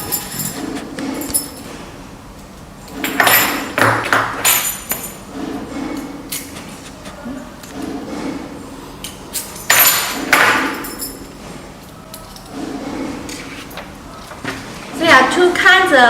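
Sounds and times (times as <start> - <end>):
metal keys clinking and knocking: 0.0 - 1.7, 9.3 - 11.4
scraping and rustling: 0.0 - 1.9.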